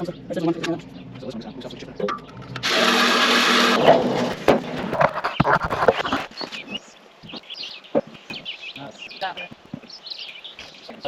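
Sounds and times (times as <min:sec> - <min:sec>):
birds chirping faintly: 0:00.0 - 0:11.0
harsh scraping: 0:00.6 - 0:07.4.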